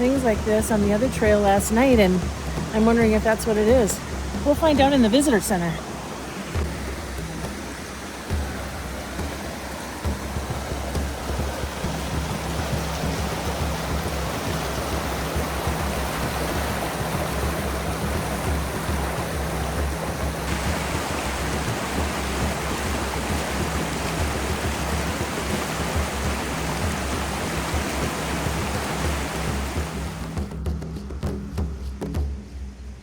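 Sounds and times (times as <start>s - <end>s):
background music: 0.0s - 5.8s
creek water rushing over rapids: 0.0s - 30.6s.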